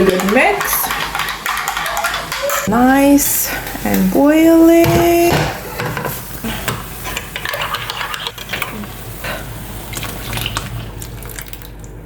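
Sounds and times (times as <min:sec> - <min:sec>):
spoon stirring and scraping a pot: 0:00.0 - 0:02.8, 0:05.5 - 0:09.4
tea boiling: 0:00.0 - 0:12.0.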